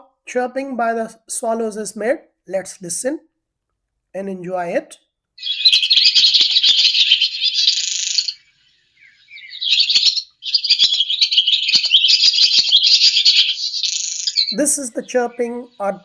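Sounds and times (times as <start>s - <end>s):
swallows twittering: 5.4s - 16.0s.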